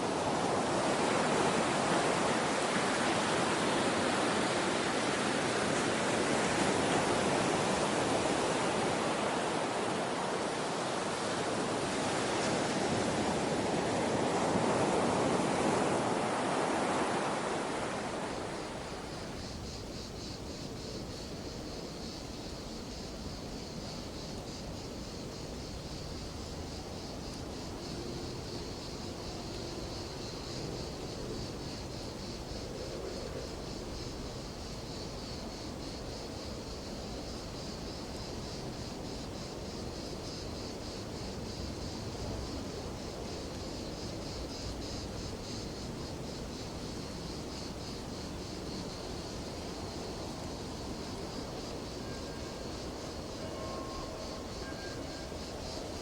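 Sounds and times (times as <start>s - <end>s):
ocean surf roaring: 0.0s - 19.3s
high pulsing insect chorus: 0.0s - 56.0s.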